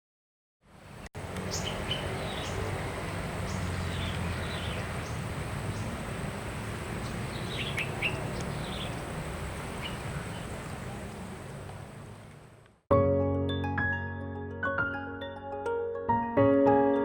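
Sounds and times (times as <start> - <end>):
bird chirps and calls: 1.4 - 11.6.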